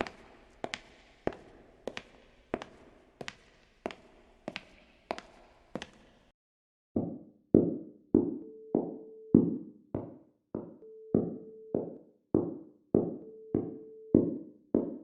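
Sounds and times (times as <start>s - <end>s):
footsteps walking: 0.0s - 6.2s.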